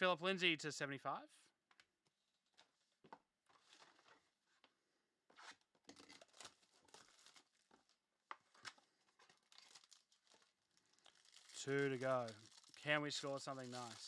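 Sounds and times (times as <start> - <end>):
wrappers rustling and crinkling: 2.4 - 4.4, 5.4 - 14.0.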